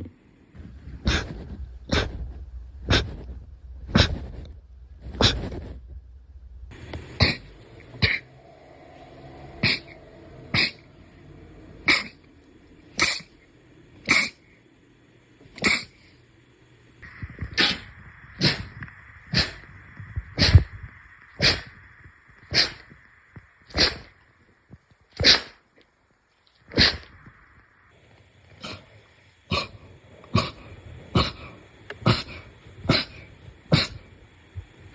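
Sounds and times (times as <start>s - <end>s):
person sneezing: 1.0s - 3.3s, 3.9s - 4.4s, 5.0s - 5.7s, 7.2s - 8.2s, 9.6s - 10.8s, 11.8s - 12.2s, 13.0s - 13.3s, 14.0s - 14.4s, 15.6s - 16.0s, 17.5s - 18.7s, 19.3s - 19.6s, 20.4s - 20.7s, 21.4s - 21.7s, 22.5s - 22.9s, 23.7s - 24.1s, 25.2s - 25.6s, 26.7s - 27.2s, 28.6s - 28.9s, 29.5s - 34.1s.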